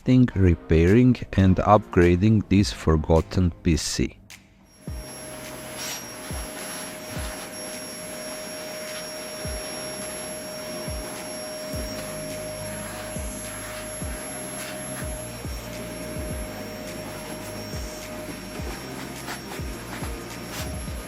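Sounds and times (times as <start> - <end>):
electric cleaning motor whining: 4.7 - 21.0.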